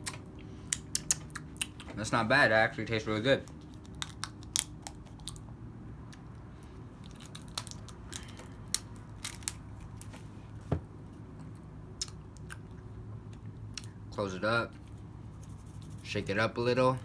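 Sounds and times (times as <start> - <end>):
candy clicking against teeth: 0.0 - 1.9, 3.4 - 5.4, 7.0 - 9.6
steady low hum: 0.0 - 17.0.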